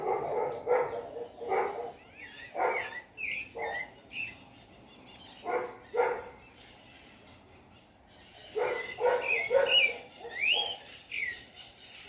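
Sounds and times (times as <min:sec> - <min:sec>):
dog barking: 0:00.0 - 0:03.0, 0:03.6 - 0:03.9, 0:05.4 - 0:06.4, 0:08.6 - 0:10.8.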